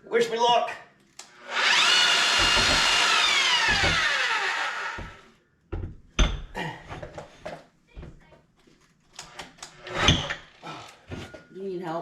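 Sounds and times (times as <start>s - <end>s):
hammer drill motor whining: 1.4s - 5.4s.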